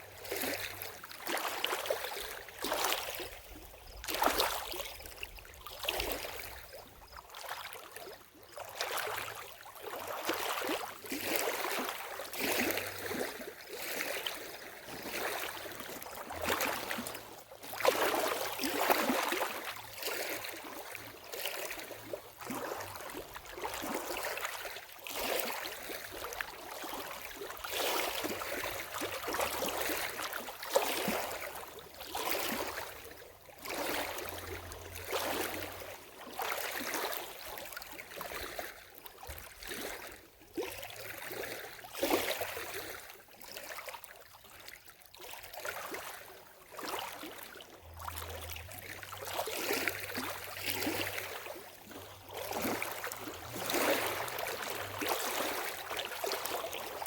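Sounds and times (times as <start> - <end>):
lake water lapping and splashing: 0.0 - 57.0.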